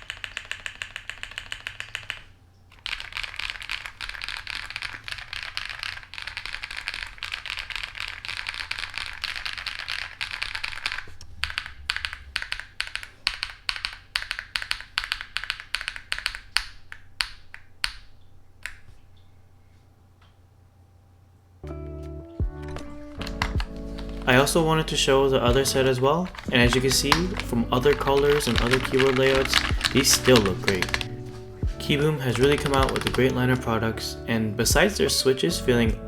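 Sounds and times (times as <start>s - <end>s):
mechanical keyboard typing: 0.0s - 19.0s, 22.5s - 34.1s.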